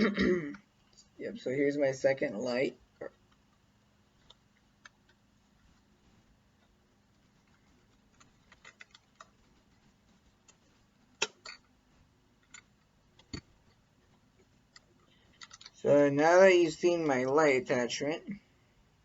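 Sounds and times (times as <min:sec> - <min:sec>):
plastic bricks clicking: 0:08.1 - 0:09.4, 0:11.2 - 0:11.7, 0:14.7 - 0:15.8.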